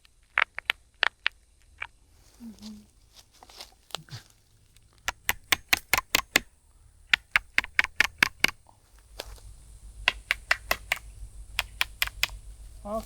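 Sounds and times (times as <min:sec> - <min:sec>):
hammer tapping nails into wood: 0:05.0 - 0:06.5, 0:07.1 - 0:08.6, 0:10.0 - 0:12.4.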